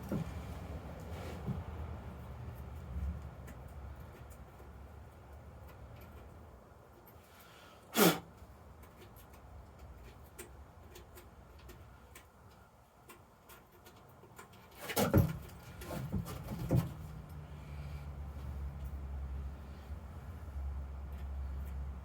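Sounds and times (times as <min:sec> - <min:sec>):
knocks and clatter: 0:14.0 - 0:17.1.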